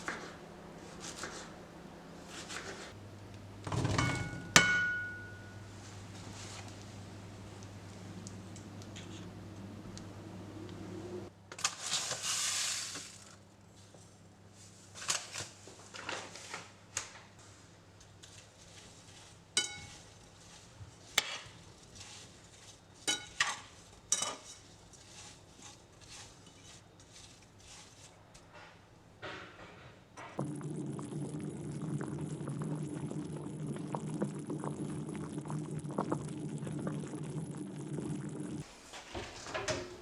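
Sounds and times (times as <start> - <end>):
steady noise with low hum: 0.0 - 11.5, 28.9 - 40.0.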